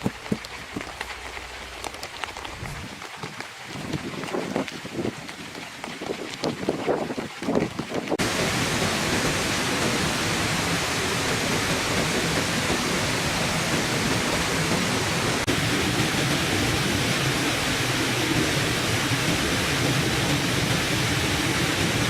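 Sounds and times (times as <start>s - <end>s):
waterfall rushing: 8.2s - 22.0s.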